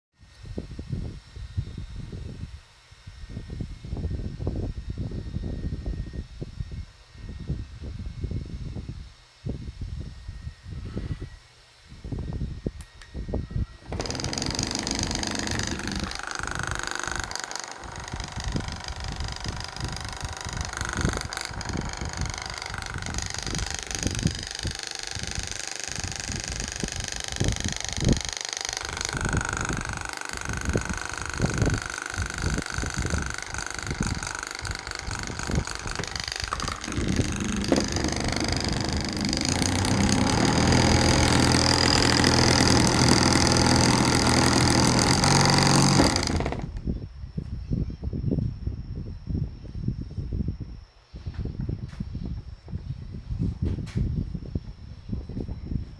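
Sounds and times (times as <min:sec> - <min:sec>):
massage gun motor running: 0:13.8 - 0:46.9
irregular low knocks: 0:28.7 - 0:46.8.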